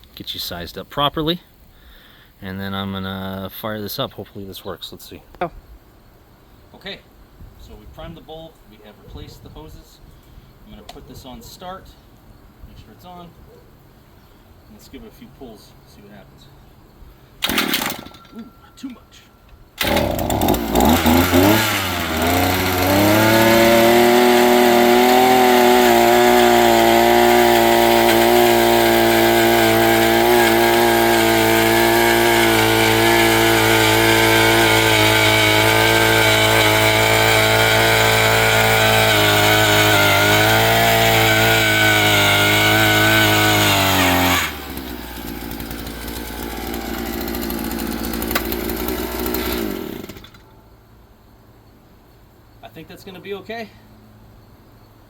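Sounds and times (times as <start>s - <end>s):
two-stroke engine running high: 19.8s - 50.2s.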